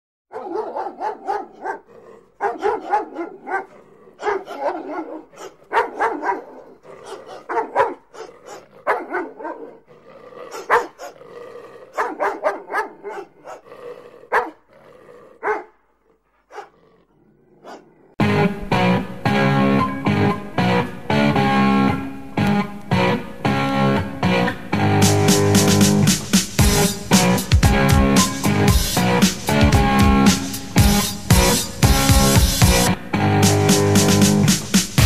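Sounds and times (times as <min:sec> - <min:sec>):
dog barking: 0:00.3 - 0:14.7, 0:15.3 - 0:16.8, 0:17.5 - 0:18.2.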